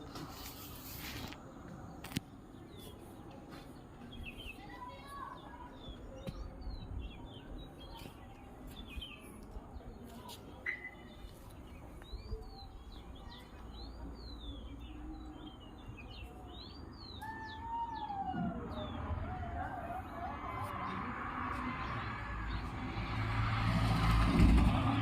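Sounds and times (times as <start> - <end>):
sparrows chirping: 0.0 - 23.3.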